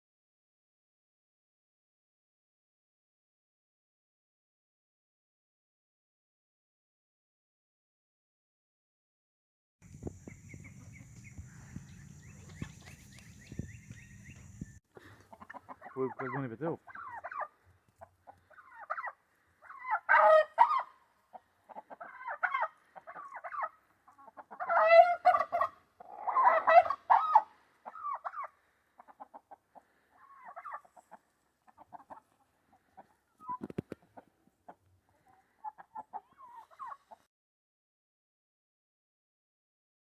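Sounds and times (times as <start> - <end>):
chickens clucking: 9.8 - 37.2.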